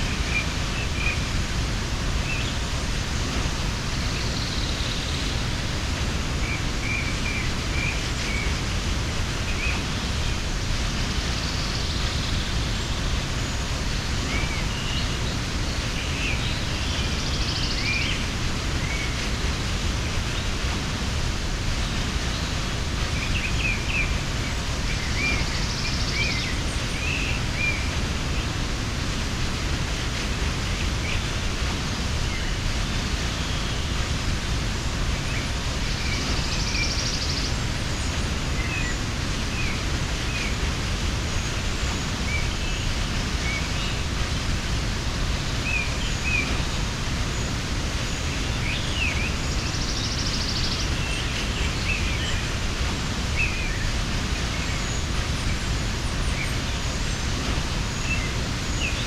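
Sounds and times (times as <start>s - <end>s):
waterfall roaring: 0.0s - 59.0s
small birds chirping: 21.7s - 59.0s.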